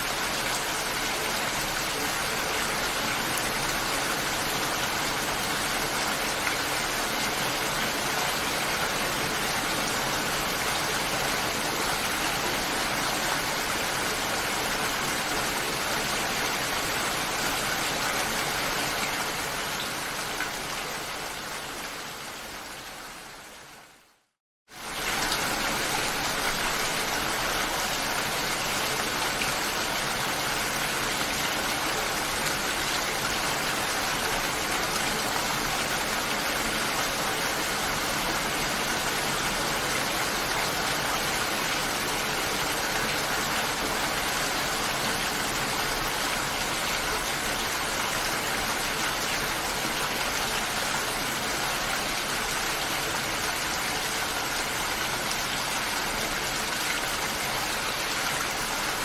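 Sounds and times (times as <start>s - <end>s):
steady rain: 0.0s - 59.0s.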